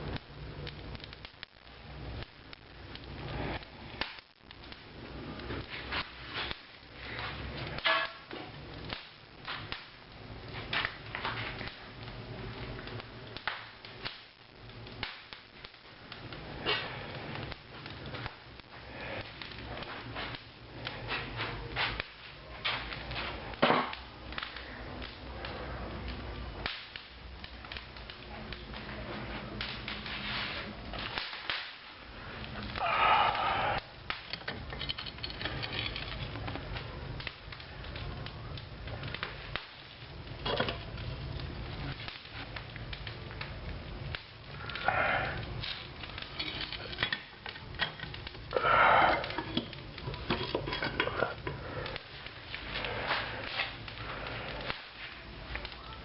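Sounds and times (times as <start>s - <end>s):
low rumble of fire: 0.0s - 56.0s
wood fire crackling: 0.0s - 56.0s
rushing hiss: 32.8s - 34.0s.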